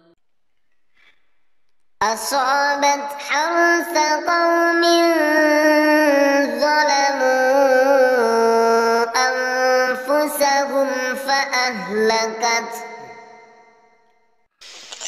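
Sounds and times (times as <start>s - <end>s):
person chanting melodic recitation: 2.0s - 13.4s.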